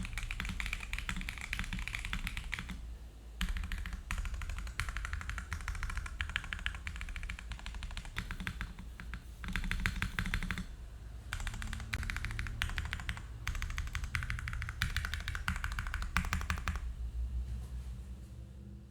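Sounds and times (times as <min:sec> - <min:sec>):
fast typing on mechanical keyboard: 0:00.0 - 0:02.8, 0:03.4 - 0:10.7, 0:11.3 - 0:16.8.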